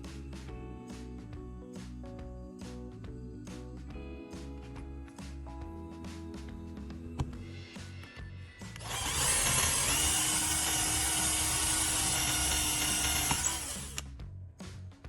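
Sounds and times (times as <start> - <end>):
background music: 0.0 - 15.0
power tool whirring: 8.8 - 14.0.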